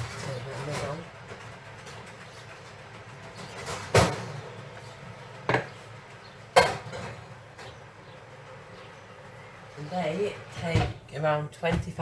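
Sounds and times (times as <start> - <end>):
oven tray clanks: 0.0 - 4.7, 5.4 - 7.9.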